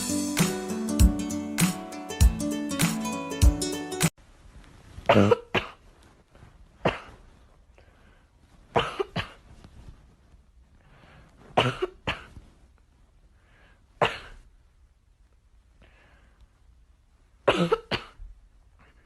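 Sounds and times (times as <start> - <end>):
guitar music: 0.0 - 4.1
short sharp coughs: 5.0 - 5.8, 6.8 - 7.2, 8.7 - 9.5, 11.6 - 12.4, 14.0 - 14.5, 17.5 - 18.3.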